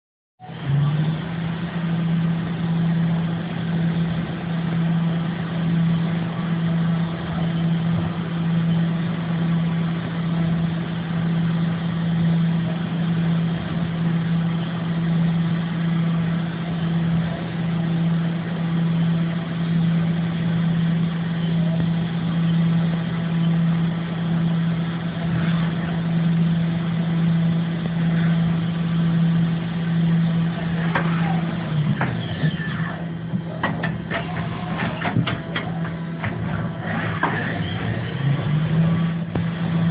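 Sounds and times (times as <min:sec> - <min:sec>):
machine mechanical hum: 0:00.4 - 0:39.9.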